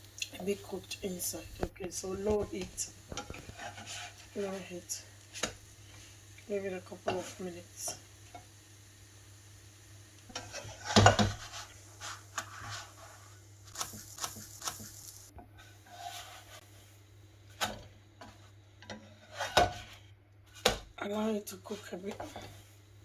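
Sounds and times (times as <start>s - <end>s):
utensils scraping a frying pan: 3.1s - 6.1s, 10.3s - 14.9s, 15.5s - 16.7s, 17.5s - 20.7s.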